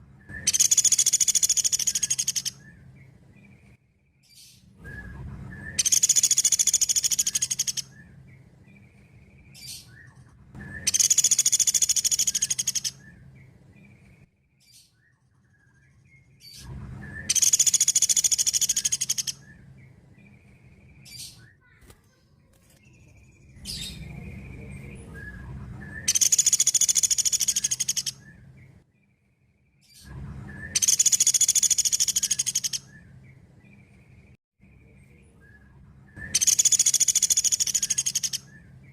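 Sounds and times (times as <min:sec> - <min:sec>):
woodpecker rapid trill: 0:00.4 - 0:02.7, 0:05.8 - 0:08.0, 0:10.7 - 0:13.2, 0:17.2 - 0:19.5, 0:25.9 - 0:28.2, 0:30.6 - 0:33.0, 0:36.2 - 0:38.6.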